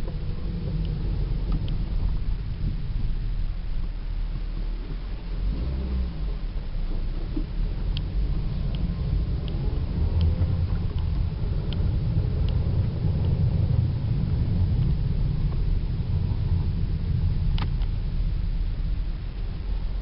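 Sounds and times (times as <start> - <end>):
light ticking: 0.0 - 2.6, 7.3 - 15.7
car engine and drivetrain rumble: 0.0 - 20.0.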